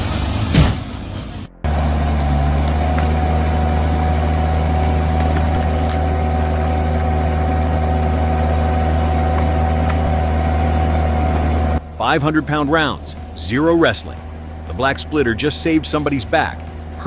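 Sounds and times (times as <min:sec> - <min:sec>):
log splitter engine droning: 0:00.0 - 0:17.0.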